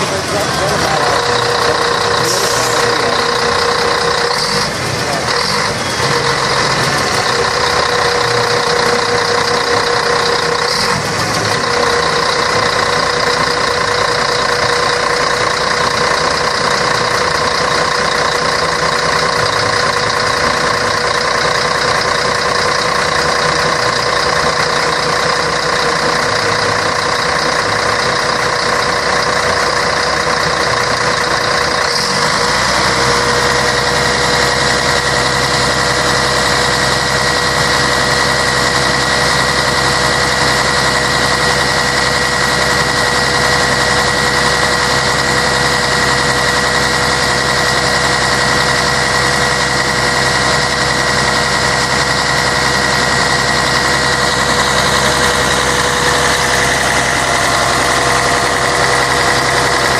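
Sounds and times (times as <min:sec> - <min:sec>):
bus diesel engine running: 0:00.0 - 0:59.9
constant whine: 0:00.0 - 0:59.9.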